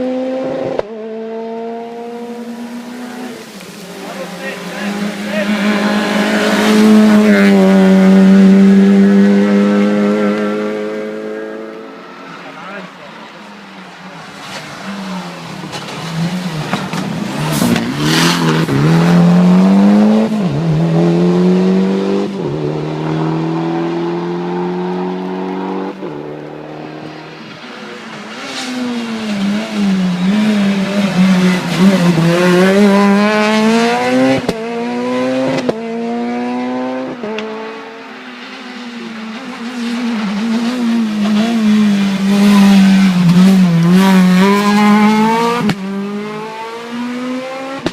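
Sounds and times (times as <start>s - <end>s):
rally car engines revving: 0.0s - 47.9s.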